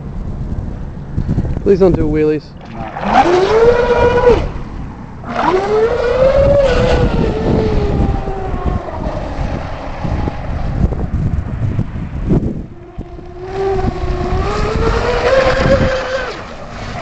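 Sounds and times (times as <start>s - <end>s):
electric motor whining: 2.6s - 4.6s, 5.2s - 11.0s, 12.3s - 17.0s.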